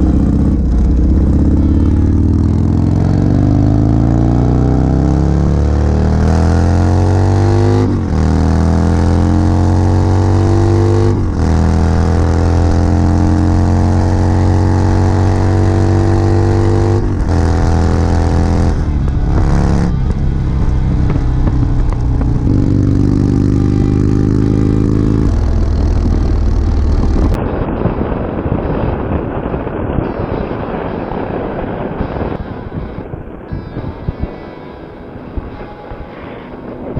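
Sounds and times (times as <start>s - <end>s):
motorcycle engine accelerating: 0.0s - 36.9s.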